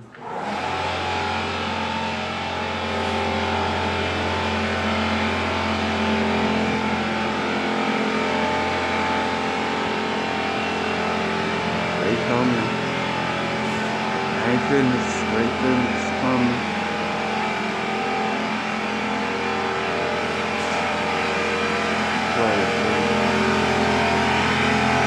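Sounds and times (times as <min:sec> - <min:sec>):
motor drone with low hum: 0:00.9 - 0:25.0.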